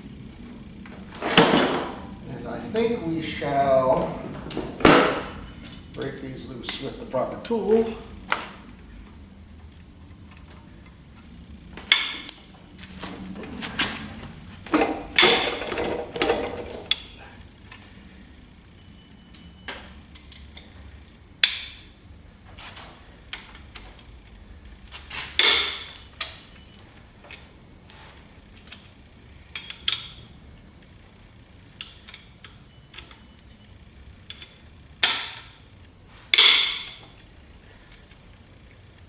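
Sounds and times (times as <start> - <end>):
tools and steel parts clinking: 13.0 - 17.2.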